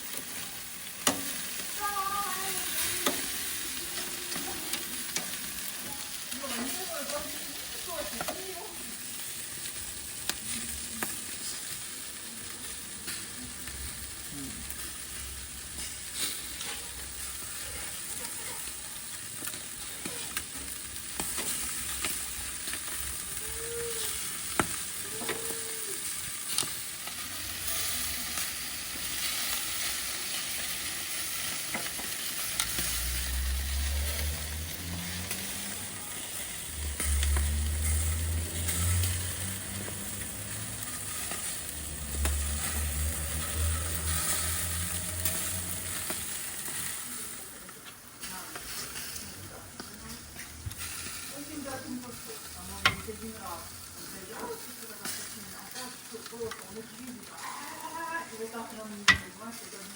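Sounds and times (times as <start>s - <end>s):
meat sizzling on a grill: 0.0s - 59.9s
low rumble: 32.8s - 46.5s.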